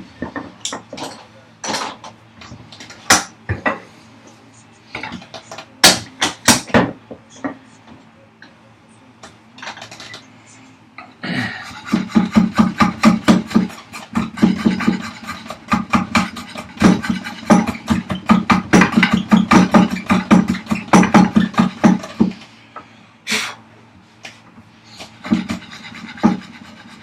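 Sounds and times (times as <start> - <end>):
hand rasp on wood: 11.6 - 22.4, 25.0 - 27.0.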